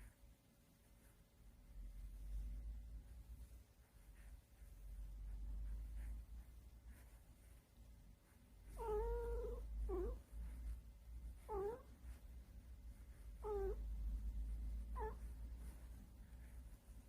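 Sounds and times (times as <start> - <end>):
low steady rumble: 0.0 - 17.0
cat murmur-calls: 11.4 - 11.9, 13.4 - 13.8, 14.9 - 15.2.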